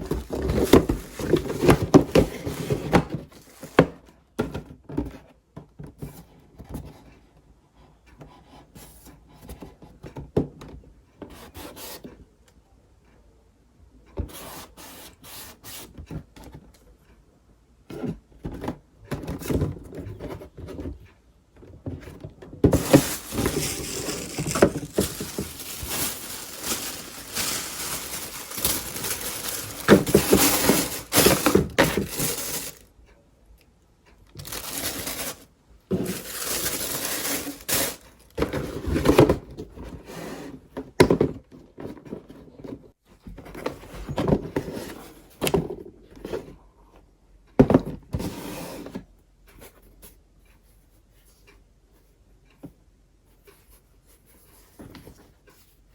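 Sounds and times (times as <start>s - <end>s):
packaging crinkling and rustling: 0.0s - 4.0s, 22.4s - 32.9s, 34.3s - 39.4s.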